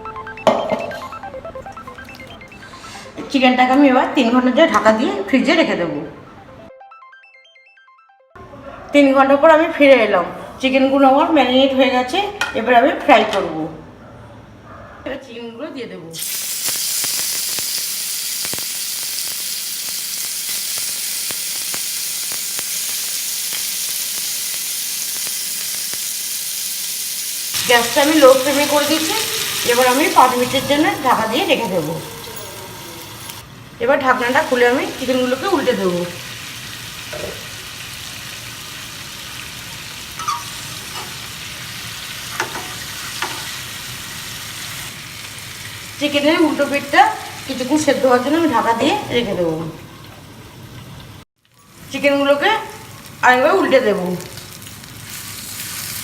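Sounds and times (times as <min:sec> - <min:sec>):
oil crackling and popping: 0:16.2 - 0:29.4, 0:54.0 - 0:56.0
chicken sizzling in hot oil: 0:16.2 - 0:33.4, 0:34.1 - 0:48.5, 0:51.7 - 0:56.0.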